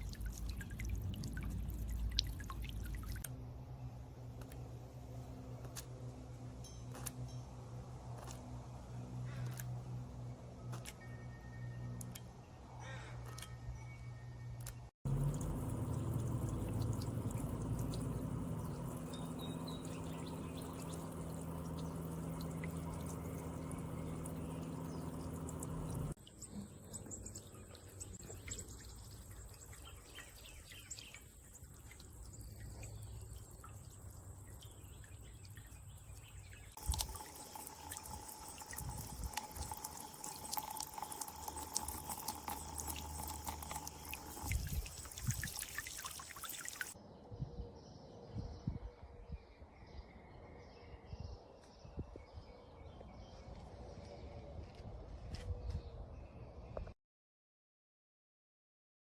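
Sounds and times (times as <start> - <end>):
fountain water splashing and trickling: 0.0 - 3.3, 15.1 - 47.0
steady low hum: 0.0 - 27.4.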